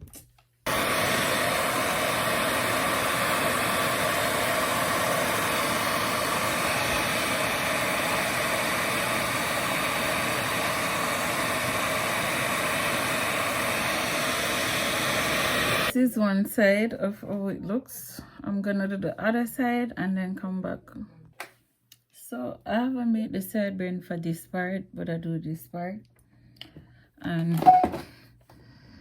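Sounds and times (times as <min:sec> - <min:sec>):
hair dryer running: 0:00.7 - 0:16.0.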